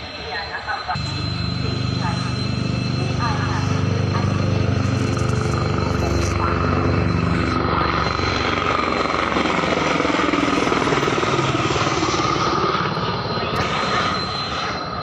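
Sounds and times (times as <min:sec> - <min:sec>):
helicopter rotor chop: 0:00.9 - 0:15.0.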